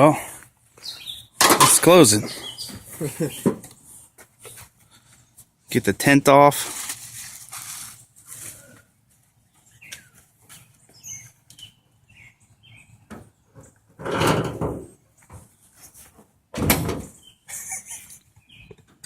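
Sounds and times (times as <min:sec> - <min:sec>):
birds chirping faintly: 0:00.4 - 0:05.4, 0:08.5 - 0:13.9, 0:17.2 - 0:19.0
scrape: 0:06.6 - 0:08.7.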